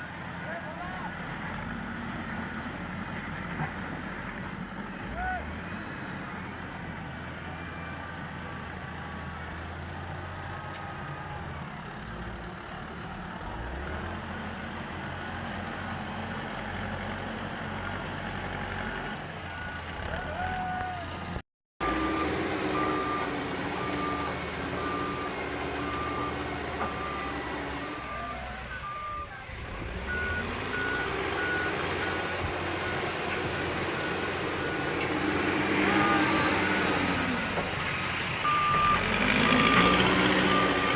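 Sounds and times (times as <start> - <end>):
heavy diesel machinery running: 20.6 - 40.9
reversing alarm beeping: 21.8 - 29.4, 30.1 - 37.2, 38.4 - 40.9.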